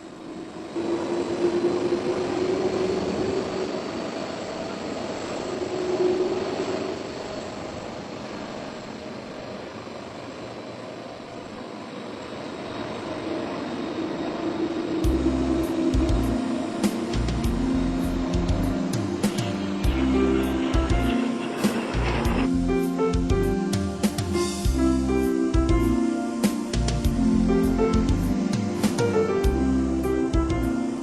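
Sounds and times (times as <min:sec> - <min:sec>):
jet engines rushing and whining: 0:00.0 - 0:31.0
low musical beat: 0:15.0 - 0:25.0.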